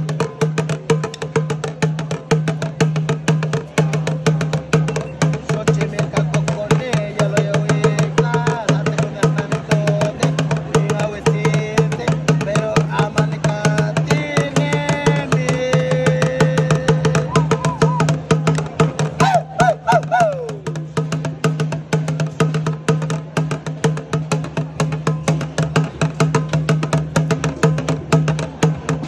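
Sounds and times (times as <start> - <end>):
drum beaten fast: 0.0 - 29.0
voices chanting: 19.2 - 20.7.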